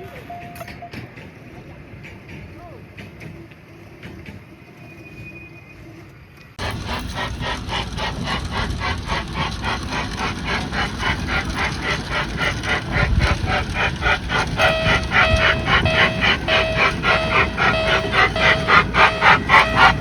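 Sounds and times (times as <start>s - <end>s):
level-crossing alarm ringing: 10.7s - 20.0s.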